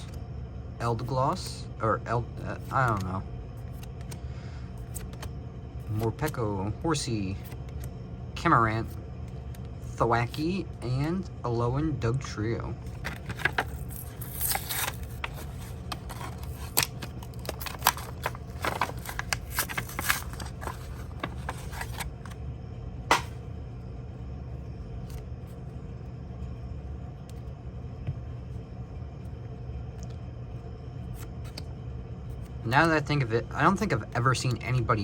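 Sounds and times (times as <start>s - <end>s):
steady low hum: 0.0s - 35.0s
trading cards rustling and clicking: 2.4s - 6.4s, 12.8s - 22.4s, 23.1s - 23.4s.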